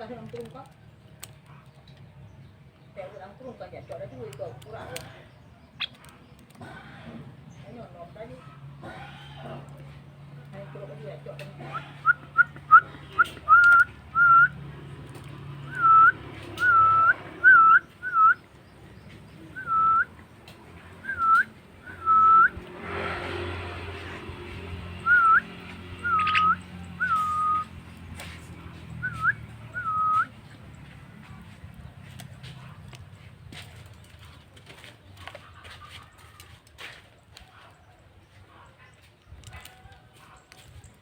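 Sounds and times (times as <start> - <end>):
short whistled notes: 26.0 - 27.7.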